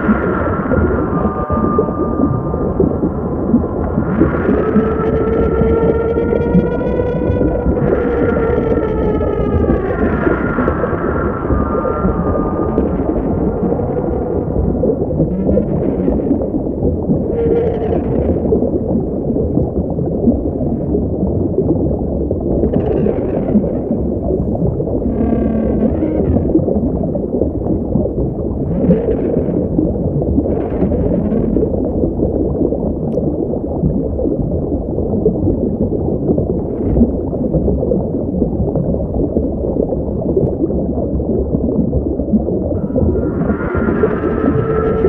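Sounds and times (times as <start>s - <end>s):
whale-like calls: 0.0s - 21.1s, 22.5s - 27.8s, 28.4s - 31.9s, 42.8s - 45.0s
low underwater rumble: 0.0s - 45.0s.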